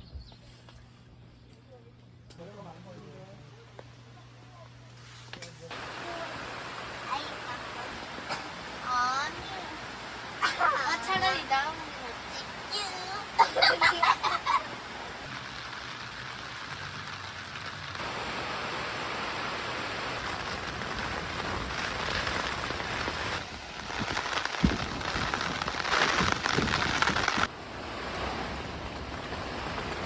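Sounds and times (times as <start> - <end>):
heavy rain hissing: 5.7 - 30.0.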